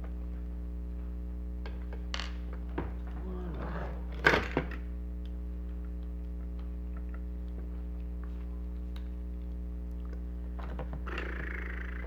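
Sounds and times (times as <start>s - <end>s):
steady electrical hum: 0.0s - 12.0s
faint ticks and clicks: 5.2s - 12.0s.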